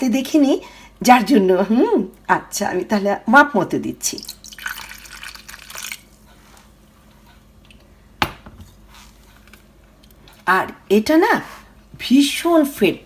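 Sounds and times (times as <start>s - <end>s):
water pouring into a bowl: 4.2s - 6.2s.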